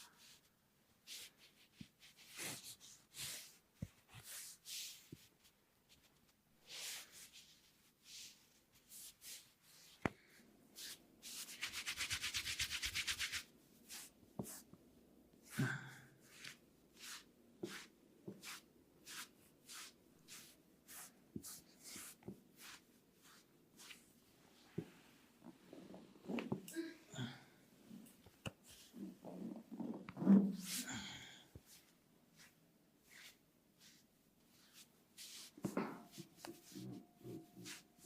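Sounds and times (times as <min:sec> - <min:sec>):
hands rubbing skin and hair: 0:10.7 - 0:14.7, 0:16.2 - 0:26.6, 0:28.0 - 0:30.9, 0:31.6 - 0:38.0.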